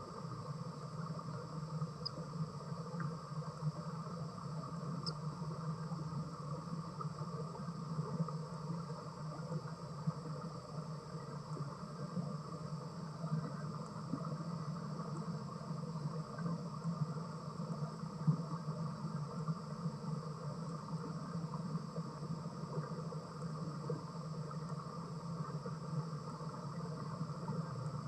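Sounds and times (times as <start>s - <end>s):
constant hiss: 0.0s - 28.0s
steady low hum: 0.0s - 28.0s.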